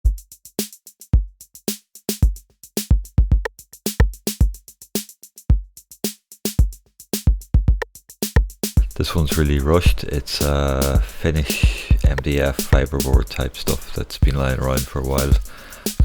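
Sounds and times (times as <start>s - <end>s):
hi-hat clicks: 0.0s - 16.0s
deep kick drums: 8.8s - 16.0s.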